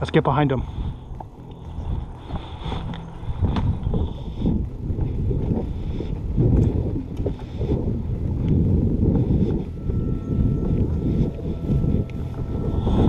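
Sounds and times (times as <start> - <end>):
wind noise on microphone: 0.0 - 13.0
footsteps thudding and rustling: 1.2 - 9.8.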